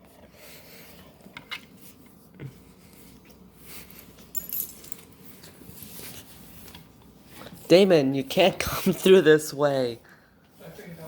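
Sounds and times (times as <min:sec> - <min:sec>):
metallic jingle: 0:04.3 - 0:05.1.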